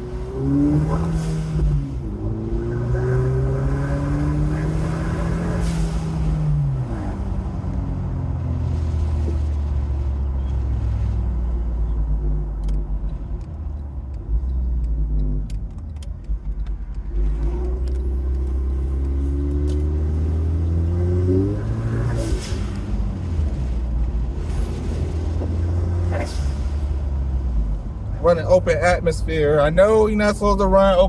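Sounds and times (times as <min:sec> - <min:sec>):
turbocharged car engine accelerating: 0:00.0 - 0:16.0, 0:16.6 - 0:31.0
faint clicks: 0:12.6 - 0:19.8.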